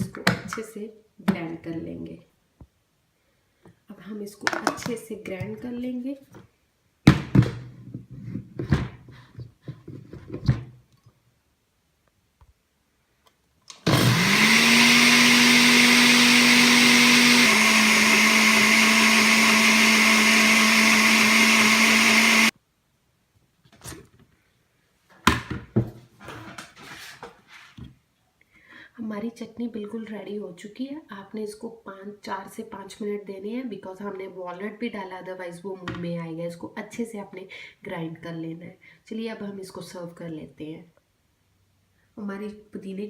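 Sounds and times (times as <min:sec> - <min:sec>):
mixer grinder motor whining: 0:13.7 - 0:22.5.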